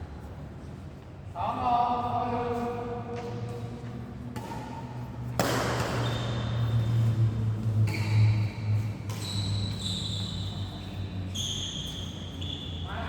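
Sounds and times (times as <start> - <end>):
racket striking shuttlecock: 4.3 - 6.1
shoes squeaking on court floor: 5.8 - 13.0.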